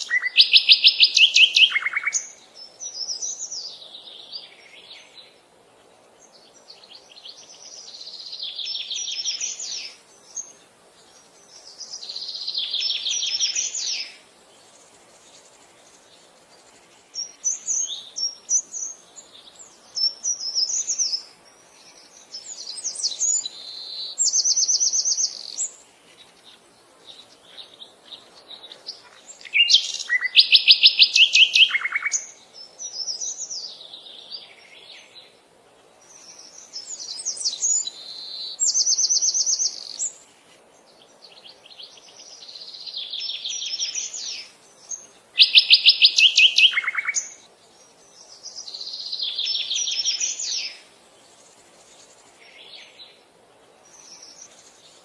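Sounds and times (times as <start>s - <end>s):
bird song with fast trill: 0.0s - 5.4s, 27.1s - 35.3s, 36.0s - 40.3s, 40.9s - 53.2s.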